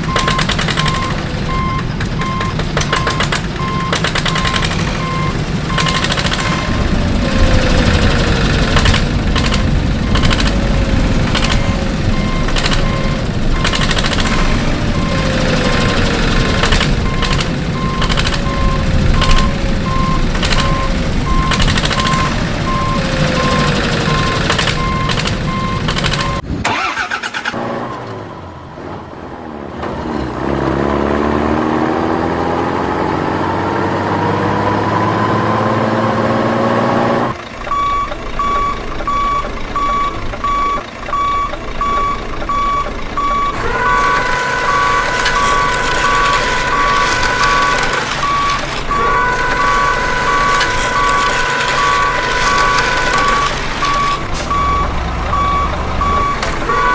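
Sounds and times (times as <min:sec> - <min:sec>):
reversing alarm beeping: 0:00.0 - 0:26.4, 0:37.3 - 0:56.9
heavy truck engine: 0:00.0 - 0:56.9.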